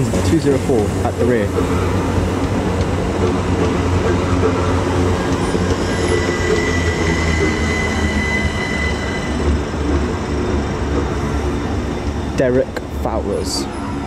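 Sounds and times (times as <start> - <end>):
train wheels rumbling on rail: 0.0 - 14.0
high wheel squeal: 3.2 - 12.4, 13.5 - 14.0.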